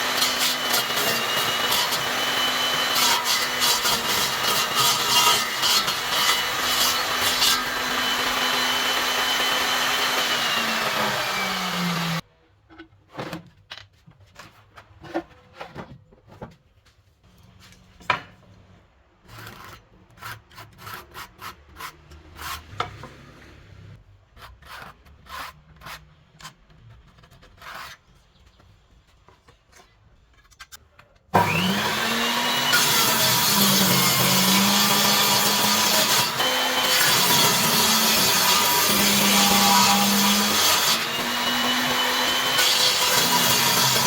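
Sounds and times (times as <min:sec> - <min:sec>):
electric power tool motor: 0:00.0 - 0:12.2
hand sawing wood: 0:00.0 - 0:12.2, 0:24.4 - 0:26.6, 0:31.4 - 0:44.0.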